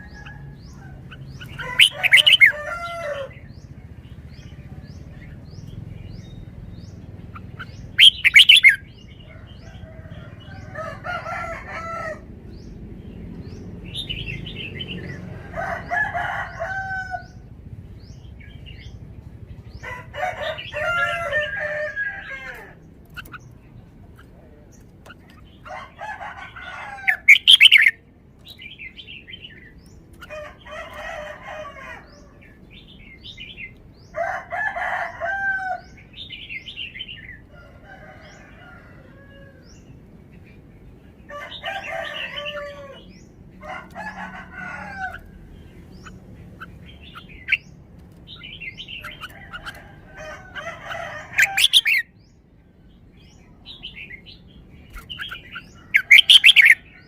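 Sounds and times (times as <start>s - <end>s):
bird singing warbling phrases: 0.0s - 9.8s, 26.7s - 30.6s, 44.9s - 57.0s.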